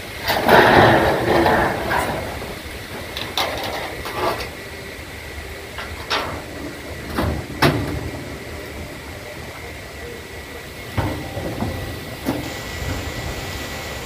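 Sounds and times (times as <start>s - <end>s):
low steady hum: 0.0s - 14.0s
knocks and clatters: 0.2s - 4.6s, 5.8s - 8.4s, 10.9s - 13.2s.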